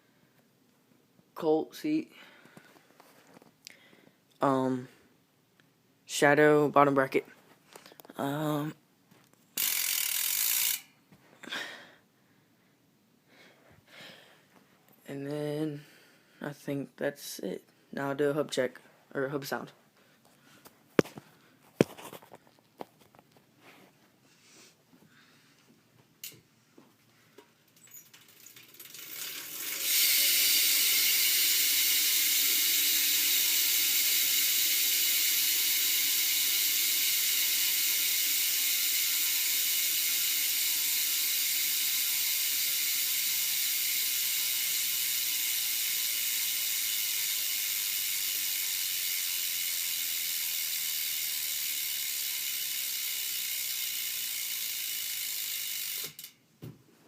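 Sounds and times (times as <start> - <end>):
bicycle hub freewheel buzzing: 9.6 - 11.0, 27.7 - 56.4.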